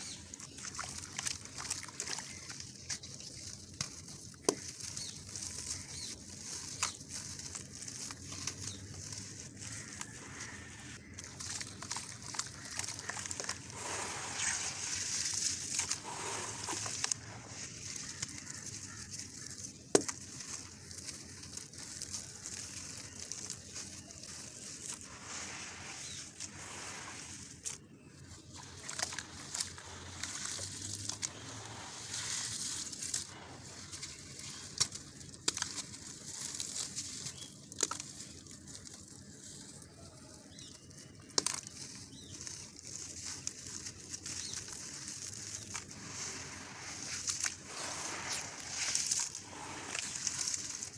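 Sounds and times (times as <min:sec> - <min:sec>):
concrete stones crumbling in water: 0:00.0 - 0:26.9.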